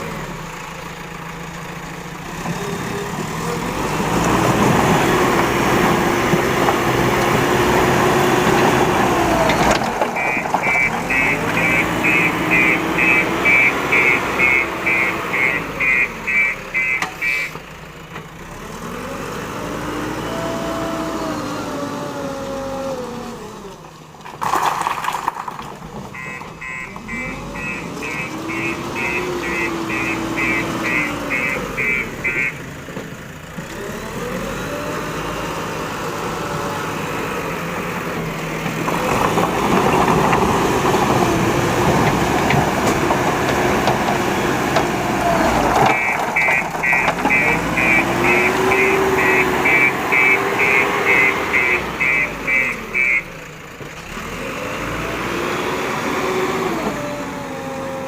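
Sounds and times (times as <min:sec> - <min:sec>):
diesel engine under load: 0:00.0 - 0:58.0
warning alarm beeping: 0:10.2 - 0:17.6, 0:26.2 - 0:32.6, 0:45.9 - 0:53.3.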